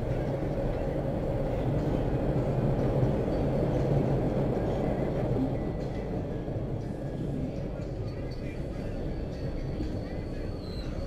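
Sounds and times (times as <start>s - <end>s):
metro train rumbling: 0.0s - 11.0s.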